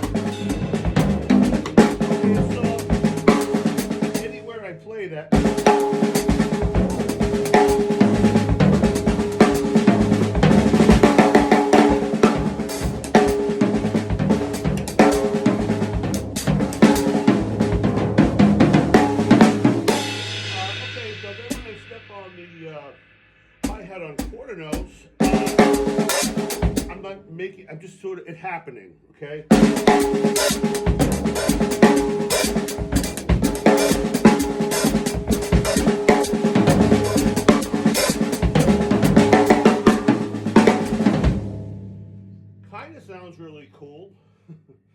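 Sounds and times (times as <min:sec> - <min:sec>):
drum kit playing: 0:00.0 - 0:27.1, 0:29.5 - 0:43.0
hi-hat stepped closed: 0:23.6 - 0:24.4.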